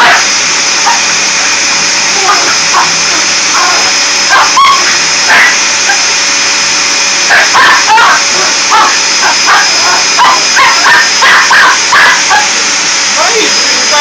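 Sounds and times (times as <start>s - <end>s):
vacuum cleaner whine: 0.0s - 14.0s.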